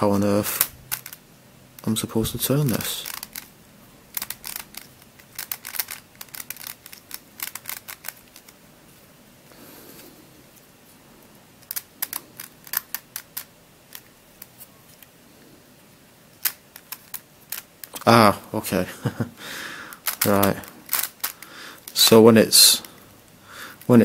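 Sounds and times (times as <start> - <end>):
plastic puzzle clicking: 0.5 - 1.2, 2.6 - 3.5, 4.1 - 8.6, 11.6 - 15.1, 16.4 - 18.1, 19.9 - 22.1.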